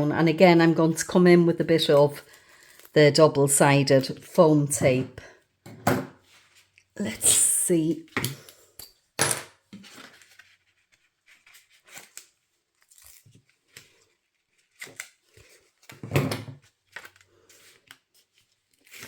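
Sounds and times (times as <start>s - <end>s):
paper rustling: 9.8s - 19.0s.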